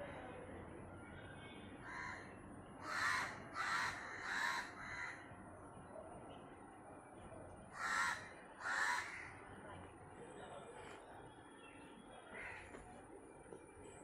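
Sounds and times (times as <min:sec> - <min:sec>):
crows cawing: 0:01.8 - 0:05.3, 0:07.7 - 0:09.4, 0:12.4 - 0:12.8.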